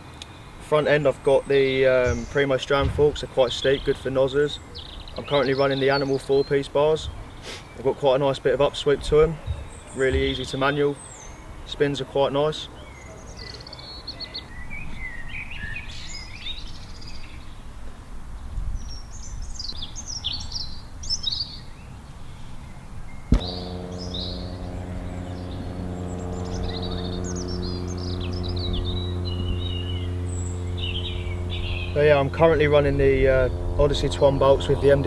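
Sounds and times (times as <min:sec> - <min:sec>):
birds chirping: 0:00.0 - 0:17.7, 0:18.9 - 0:35.0
steady low hum: 0:23.3 - 0:35.0.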